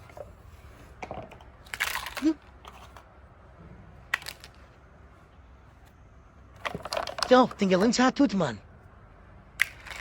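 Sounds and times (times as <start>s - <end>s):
plastic toys clicking: 6.6s - 8.0s.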